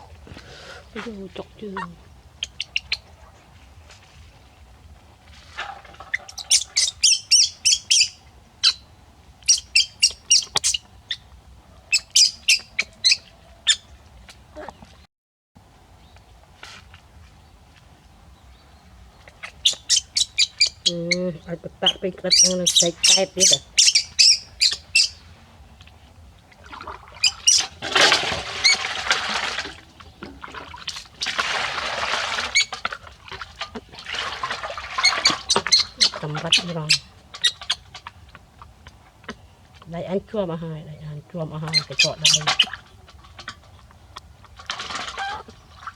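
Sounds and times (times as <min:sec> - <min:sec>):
water pouring from a scoop: 0:05.2 - 0:06.8, 0:26.4 - 0:39.3, 0:42.0 - 0:45.9
monkey squeaking: 0:06.2 - 0:08.8, 0:09.5 - 0:11.2, 0:11.9 - 0:13.8, 0:19.5 - 0:21.2, 0:21.8 - 0:25.2, 0:27.2 - 0:27.6, 0:35.0 - 0:37.8, 0:41.7 - 0:42.7.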